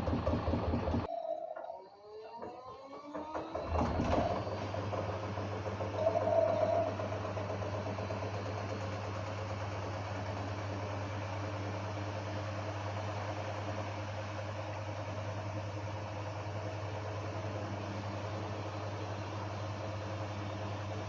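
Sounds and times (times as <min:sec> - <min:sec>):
washing machine clatter: 0:02.3 - 0:12.7.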